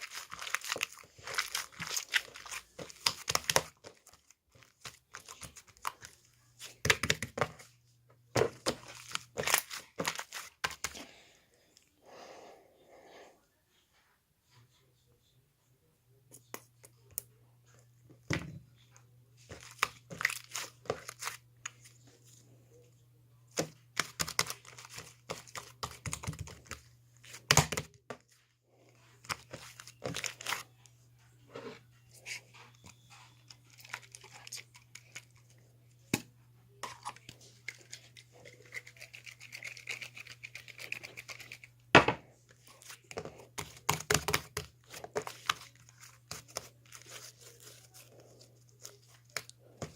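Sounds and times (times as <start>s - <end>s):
craft materials crinkling and tearing: 0.0s - 6.7s, 8.5s - 11.0s, 19.5s - 21.4s, 42.6s - 49.9s.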